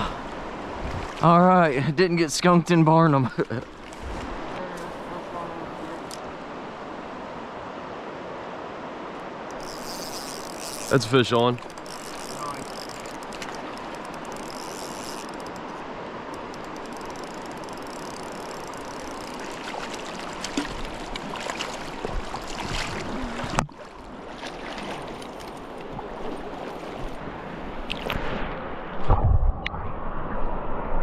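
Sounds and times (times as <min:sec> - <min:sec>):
river rushing over riffles: 0:00.0 - 0:28.7
short clicks and splashy ticks: 0:09.5 - 0:22.8.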